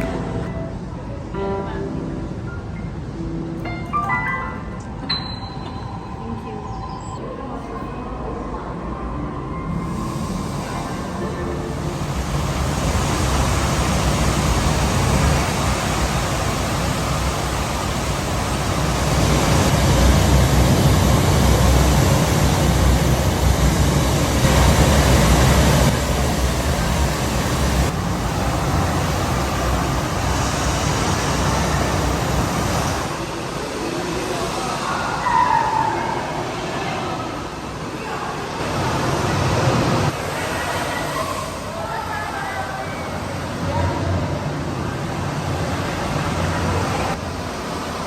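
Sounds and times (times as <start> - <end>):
waterfall rushing: 9.7 - 48.0.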